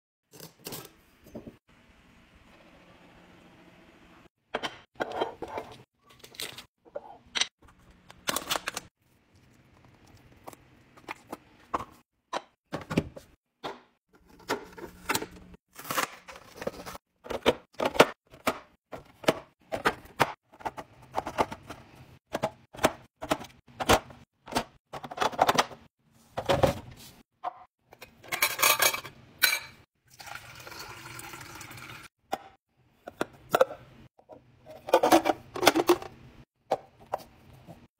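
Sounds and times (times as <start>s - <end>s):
food containers clicking and clinking: 9.8s - 26.8s, 32.3s - 37.3s.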